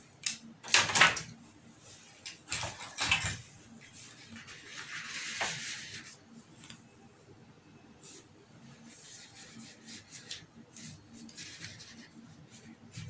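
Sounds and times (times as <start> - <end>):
soft rustling scrape: 8.0 - 13.0.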